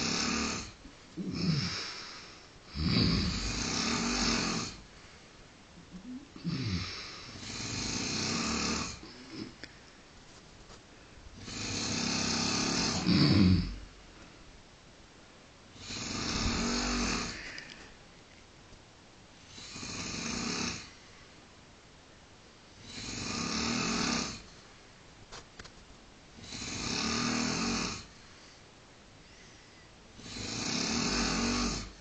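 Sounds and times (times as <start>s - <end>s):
man snoring: 0.0s - 4.8s, 6.4s - 9.6s, 11.4s - 13.9s, 15.8s - 17.7s, 19.5s - 21.0s, 22.8s - 24.5s, 26.4s - 28.1s, 30.2s - 32.0s.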